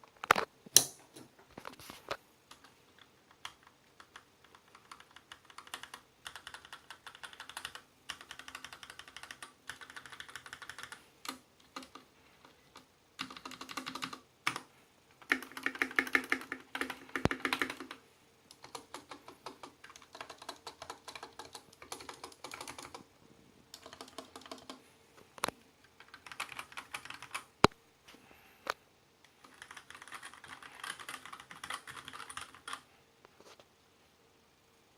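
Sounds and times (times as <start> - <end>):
mechanical keyboard typing: 2.5 - 23.1, 23.7 - 24.8, 25.9 - 27.5, 29.4 - 32.8.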